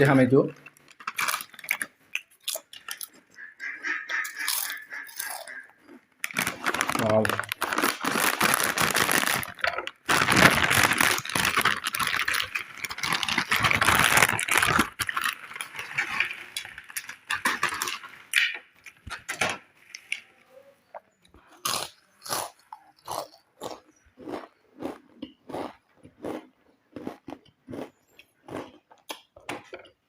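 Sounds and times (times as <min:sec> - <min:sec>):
chewing crunches: 0:00.6 - 0:18.1, 0:21.3 - 0:29.9
chip packet crinkling: 0:00.8 - 0:03.3, 0:04.3 - 0:19.0.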